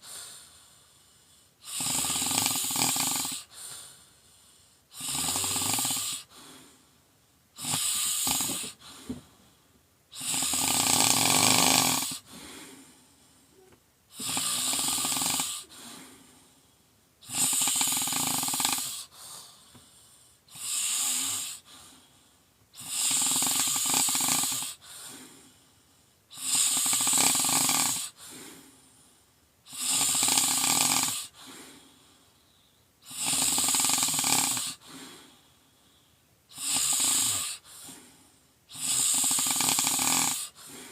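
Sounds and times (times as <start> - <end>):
quiet breath: 0.0 - 1.7, 3.1 - 10.5, 11.3 - 14.4, 15.4 - 17.9, 18.5 - 23.8, 24.4 - 26.6, 27.9 - 29.8, 30.4 - 40.9
person snoring: 1.6 - 3.8, 4.9 - 6.8, 7.6 - 9.2, 10.1 - 16.5, 17.2 - 19.1, 20.5 - 21.9, 22.8 - 25.5, 26.3 - 28.8, 29.7 - 31.9, 33.0 - 35.4, 36.5 - 40.9.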